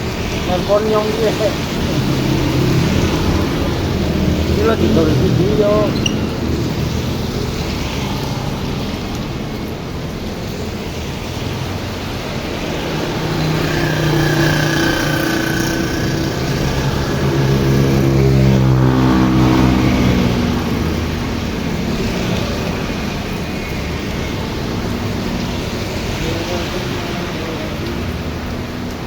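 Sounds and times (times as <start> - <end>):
vehicle engine passing by: 0.0 - 9.1, 12.2 - 22.7
heavy rain hissing: 0.0 - 29.0.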